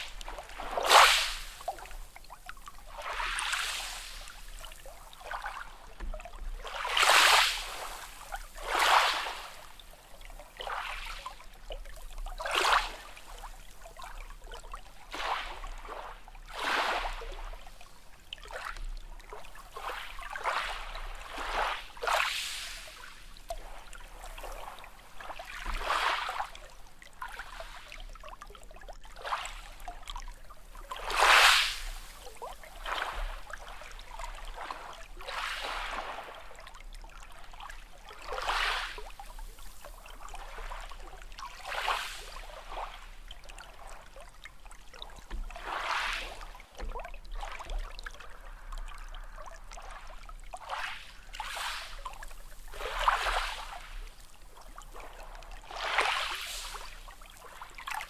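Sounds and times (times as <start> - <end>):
sea waves washing in: 0.0 - 6.0, 6.7 - 11.2, 19.6 - 26.6, 30.6 - 36.6, 38.4 - 44.2, 45.2 - 46.9, 47.6 - 58.0.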